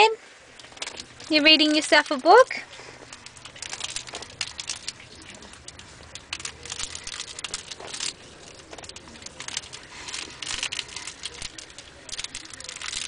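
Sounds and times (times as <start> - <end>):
book pages rustling: 0.6 - 13.0.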